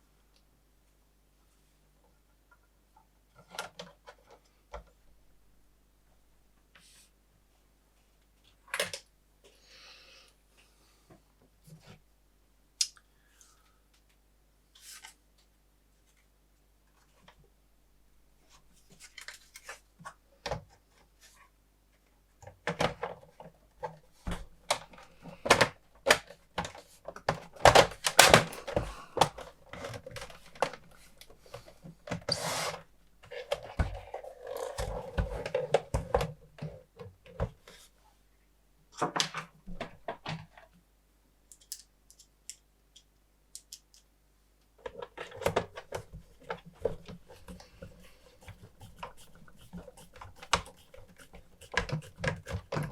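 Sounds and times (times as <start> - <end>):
short scrape: 32.3 - 32.8
clicks and clatter of small parts: 41.5 - 44.1.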